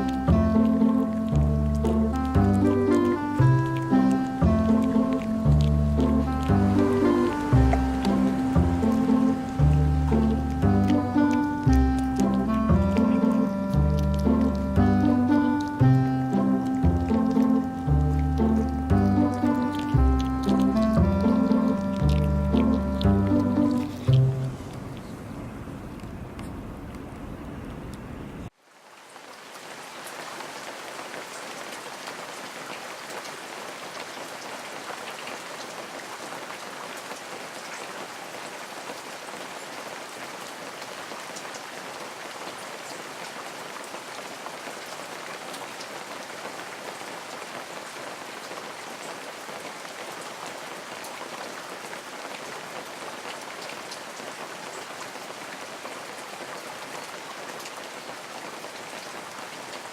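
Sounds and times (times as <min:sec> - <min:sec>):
raindrop ticks: 0:00.0 - 0:28.1, 0:42.4 - 0:59.9
steady rain hiss: 0:00.0 - 0:59.9.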